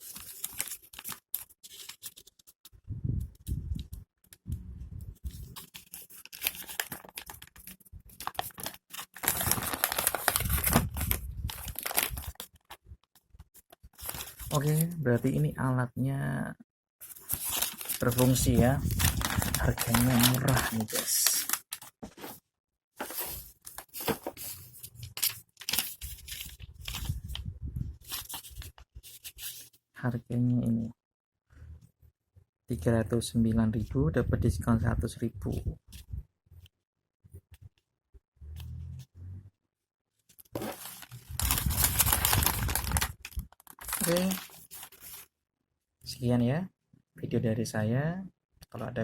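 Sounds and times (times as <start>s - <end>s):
packaging crinkling and rustling: 0.0s - 2.6s, 5.3s - 12.9s, 13.6s - 15.0s, 17.0s - 22.4s, 23.0s - 27.4s, 28.0s - 29.7s, 40.3s - 45.3s.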